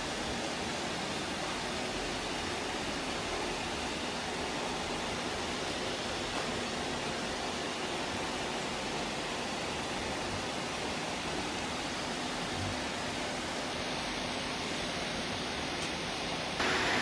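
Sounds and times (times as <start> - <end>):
robot vacuums whirring: 16.6 - 17.0.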